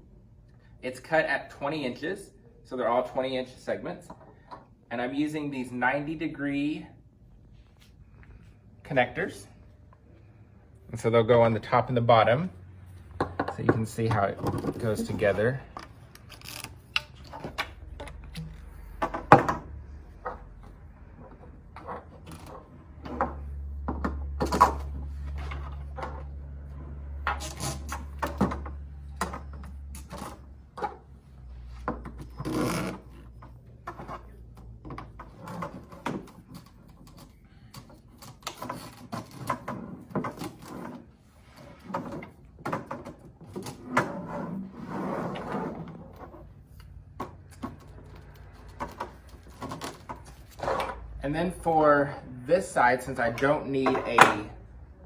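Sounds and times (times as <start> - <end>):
plastic pipe clicks and scrapes: 13.2 - 26.3, 31.9 - 51.0.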